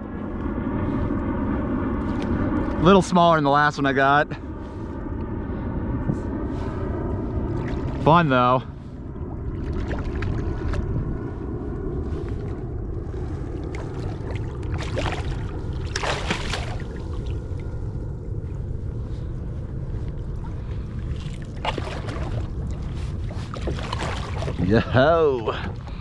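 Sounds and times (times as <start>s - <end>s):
water around a kayak: 0.0s - 26.0s
wind: 0.0s - 26.0s
wind rumbling on microphone: 0.0s - 26.0s.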